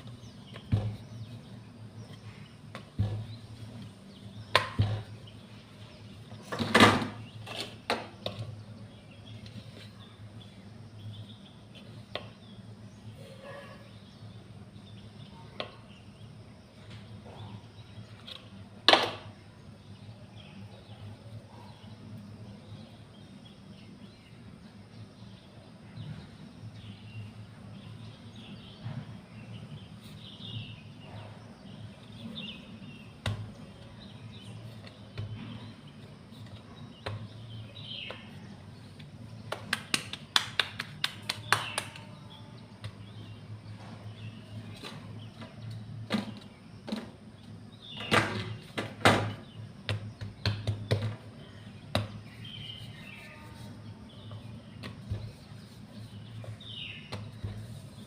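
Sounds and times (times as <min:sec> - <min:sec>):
birds chirping: 0:00.0 - 0:58.0.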